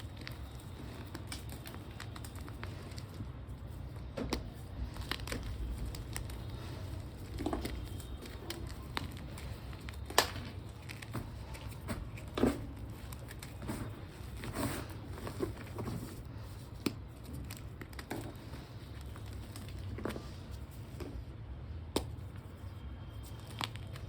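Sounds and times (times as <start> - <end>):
chalk blocks being crushed: 4.0 - 20.9.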